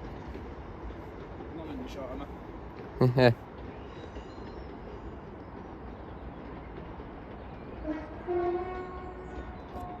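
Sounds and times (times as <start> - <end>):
train rumbling: 0.0 - 10.0
two-tone train horn: 7.8 - 10.0.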